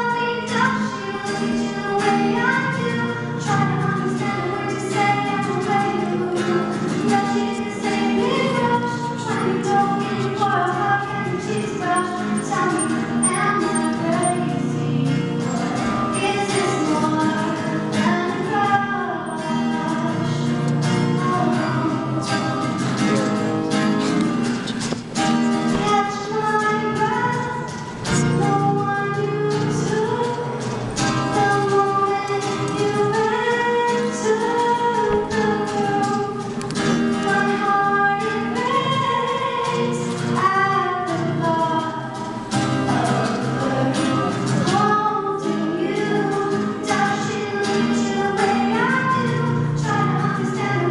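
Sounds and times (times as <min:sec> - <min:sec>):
two people singing a duet: 0:00.0 - 0:23.3, 0:25.8 - 0:50.9
instrumental accompaniment: 0:01.0 - 0:40.6.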